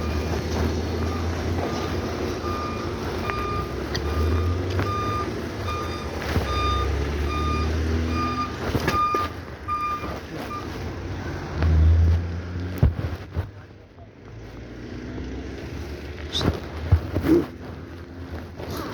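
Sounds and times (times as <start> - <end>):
reversing alarm beeping: 0.0 - 0.3, 0.9 - 10.7
low engine rumble: 0.0 - 18.9.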